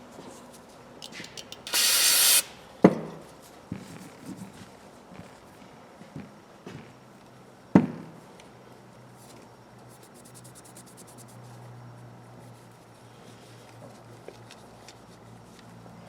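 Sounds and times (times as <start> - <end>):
metal tools knocking: 1.0 - 1.8.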